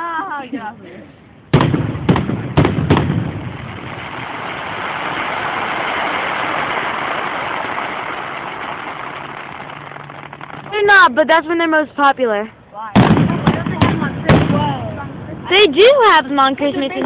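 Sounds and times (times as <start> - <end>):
firework bang: 1.5 - 11.2, 12.9 - 15.2
fireworks dense crackle: 1.5 - 17.0.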